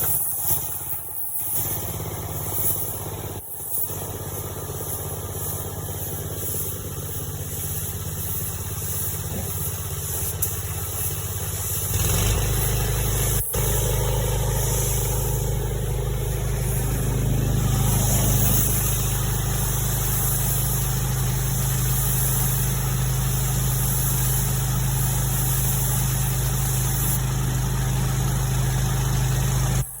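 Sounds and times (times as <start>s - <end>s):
engine running: 0.0s - 30.0s.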